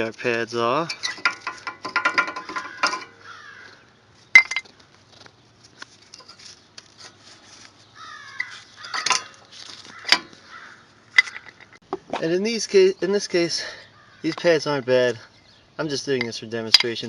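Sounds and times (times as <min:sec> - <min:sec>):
metal clicking and rattling: 0:00.2 - 0:03.2, 0:04.4 - 0:04.7, 0:08.3 - 0:10.4, 0:11.1 - 0:11.8.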